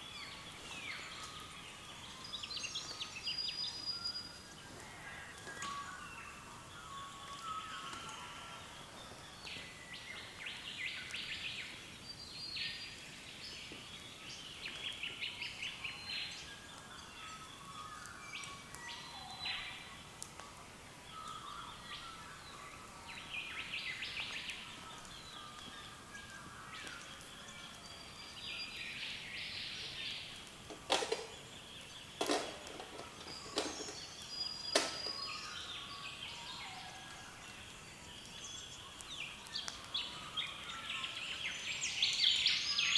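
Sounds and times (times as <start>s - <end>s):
birds calling and singing: 0.0s - 42.9s
sharp loud snaps: 32.2s - 35.4s.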